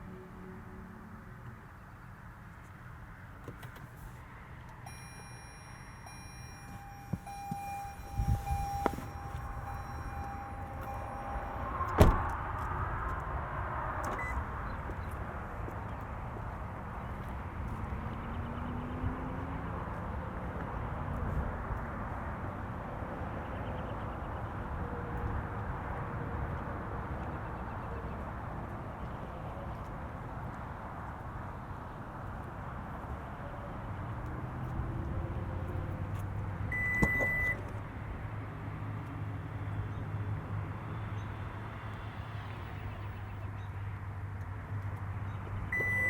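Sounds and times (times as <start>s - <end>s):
road and tyre noise in car cabin: 0.0s - 46.0s
car warning chime beeping: 4.8s - 12.3s, 14.1s - 14.4s, 36.7s - 37.6s, 45.6s - 46.0s.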